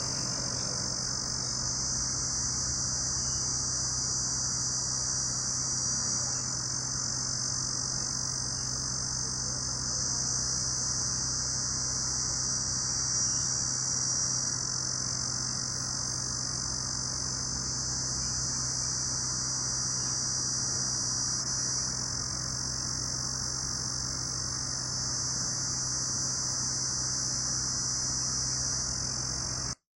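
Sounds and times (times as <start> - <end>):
faint low hum: 0.0 - 29.8
night insects trilling: 0.0 - 29.8.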